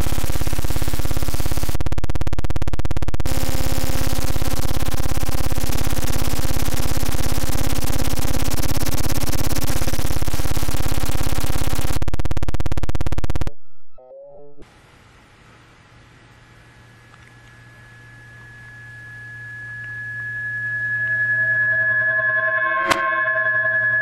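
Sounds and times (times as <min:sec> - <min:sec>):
pulsing electronic buzz: 0:00.0 - 0:13.9, 0:17.4 - 0:24.0
faint low hum: 0:13.2 - 0:21.9.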